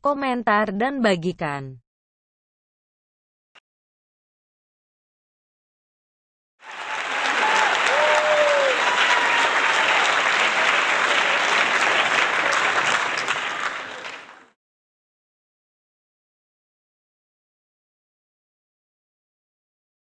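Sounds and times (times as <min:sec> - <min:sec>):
crowd clapping: 0:06.6 - 0:14.6
people shouting: 0:06.8 - 0:10.0.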